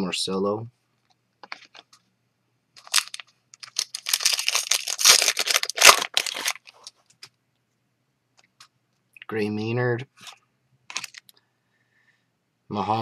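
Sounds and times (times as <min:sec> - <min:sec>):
cards and packaging rustling: 0:01.4 - 0:01.9, 0:02.8 - 0:07.0, 0:10.2 - 0:11.3.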